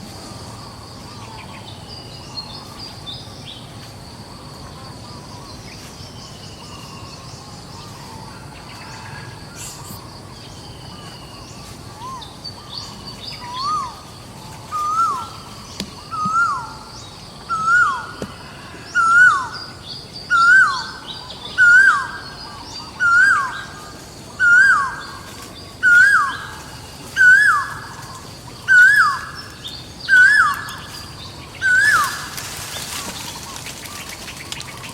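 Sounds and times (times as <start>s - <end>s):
bird whistling rising notes: 16.0s - 16.9s, 27.2s - 27.9s, 28.7s - 30.9s.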